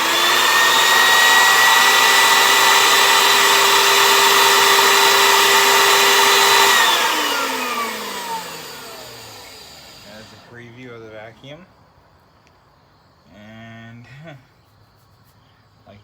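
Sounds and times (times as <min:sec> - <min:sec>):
vacuum cleaner whining: 0:00.0 - 0:10.6
vacuum motor winding down: 0:00.0 - 0:10.6.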